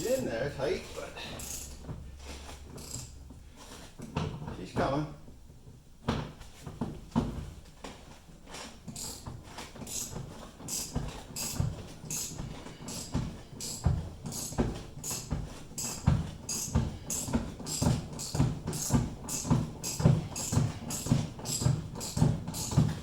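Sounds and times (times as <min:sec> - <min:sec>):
socket ratchet clicking: 0:01.4 - 0:01.8, 0:02.8 - 0:03.2, 0:09.9 - 0:10.1, 0:10.7 - 0:12.3.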